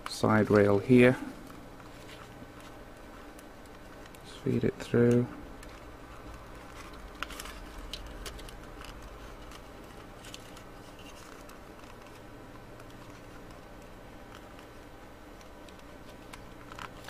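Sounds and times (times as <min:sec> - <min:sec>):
steady low hum: 0:00.0 - 0:17.0
plastic parts rustling and clicking: 0:05.0 - 0:17.0.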